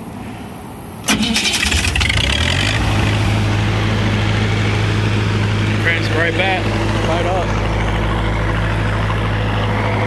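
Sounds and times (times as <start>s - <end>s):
engine starter cranking: 1.0s - 3.2s
gasoline engine running: 1.1s - 10.0s.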